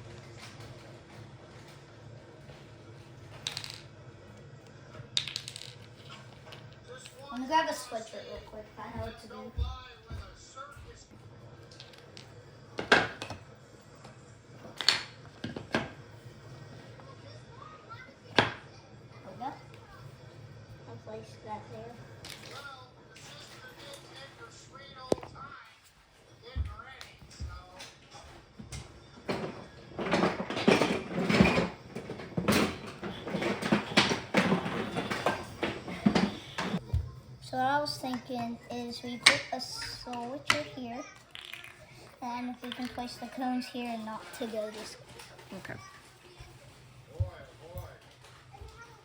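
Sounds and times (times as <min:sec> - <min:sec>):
small hard objects clicking: 0:41.3 - 0:41.8.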